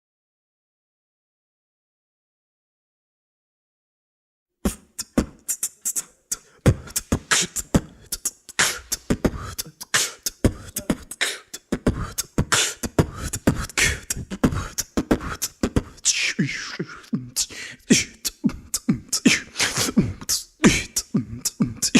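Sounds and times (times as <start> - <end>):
person beatboxing: 4.6 - 21.9.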